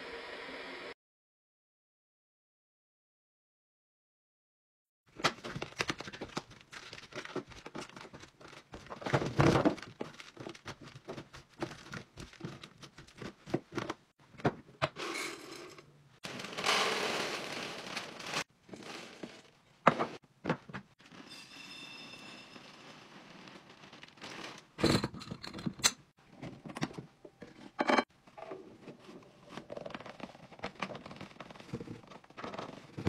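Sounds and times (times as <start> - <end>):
packaging rustling: 5.3 - 13.4, 16.2 - 19.5, 22.8 - 24.8
plastic crinkling: 5.4 - 13.3, 16.2 - 19.5, 22.6 - 24.8.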